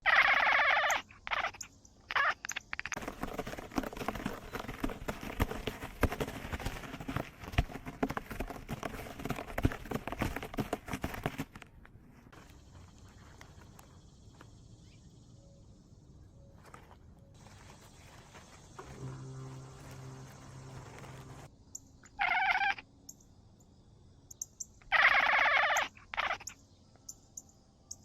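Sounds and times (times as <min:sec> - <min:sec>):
cat meowing: 0:00.0 - 0:02.4, 0:22.2 - 0:22.8, 0:24.9 - 0:26.4
taps scuffs and rustles: 0:03.0 - 0:14.6, 0:16.6 - 0:21.5.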